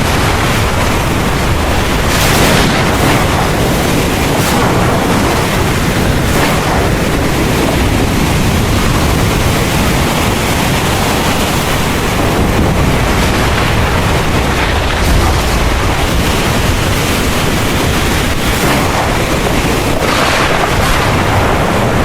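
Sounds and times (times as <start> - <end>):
heavy rain pouring: 0.0 - 22.0.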